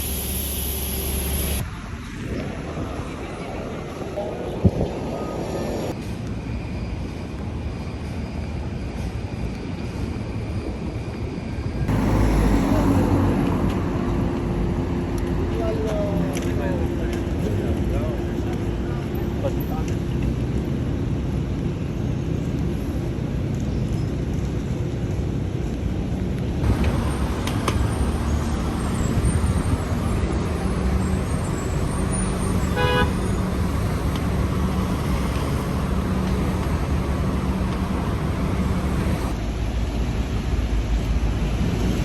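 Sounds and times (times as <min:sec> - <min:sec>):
city traffic rumble: 0:00.0 - 0:42.0
car horn beep: 0:32.0 - 0:34.9.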